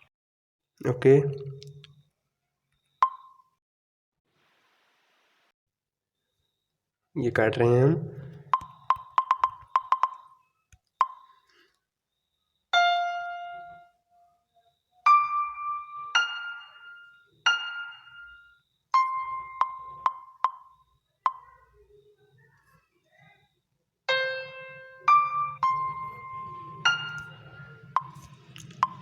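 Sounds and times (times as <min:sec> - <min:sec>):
screen tap clicks: 0:03.0 - 0:03.4, 0:08.4 - 0:10.3, 0:11.0 - 0:11.3, 0:19.6 - 0:20.7, 0:28.0 - 0:29.0
smartphone piano-like notes: 0:08.5 - 0:10.4, 0:12.8 - 0:14.0, 0:15.0 - 0:21.5, 0:24.1 - 0:29.0.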